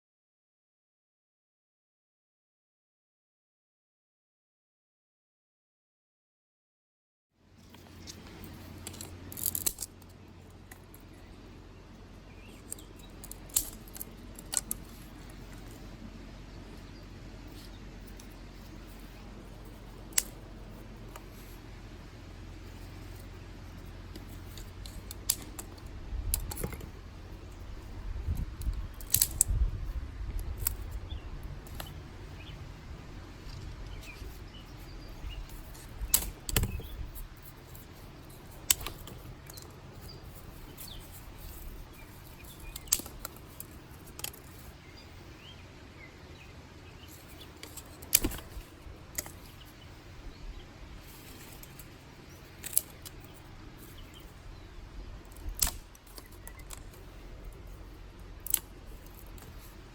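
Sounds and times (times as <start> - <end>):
sticks snapping: 7.7 - 10.9, 12.5 - 15.8, 19.7 - 20.5, 24.1 - 27.0, 28.3 - 29.7, 30.3 - 31.0, 35.2 - 44.6, 47.0 - 49.8, 51.1 - 53.4, 55.3 - 57.1, 58.4 - 59.8.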